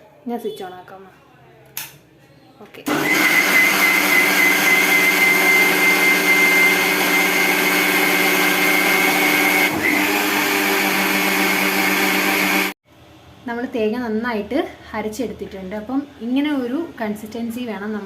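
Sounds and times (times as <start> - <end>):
mixer grinder motor whine: 2.9 - 12.8.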